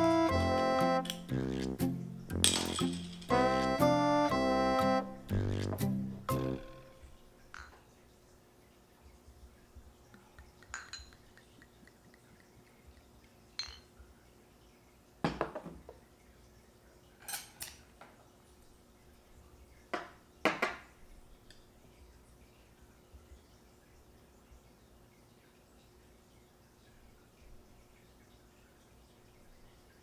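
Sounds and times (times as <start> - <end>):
small hard objects clinking: 2.3 - 3.4.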